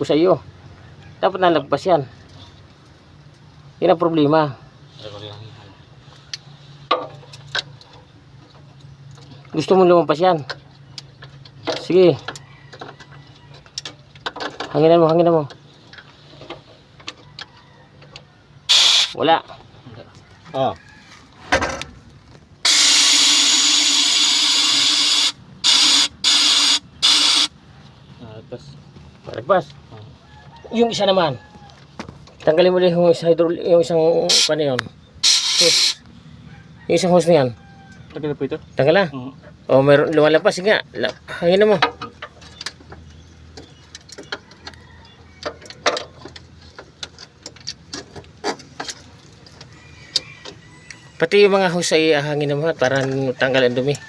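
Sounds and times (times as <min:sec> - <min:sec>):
compressed air hissing: 0:18.7 - 0:19.2, 0:22.6 - 0:27.6, 0:34.3 - 0:34.6, 0:35.2 - 0:36.0.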